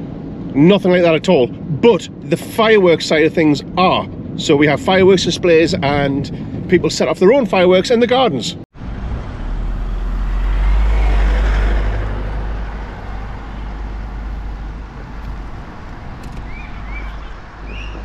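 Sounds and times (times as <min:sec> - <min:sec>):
car engine and road rumble: 0:00.0 - 0:07.8, 0:08.7 - 0:18.0
tyre noise: 0:10.8 - 0:18.0.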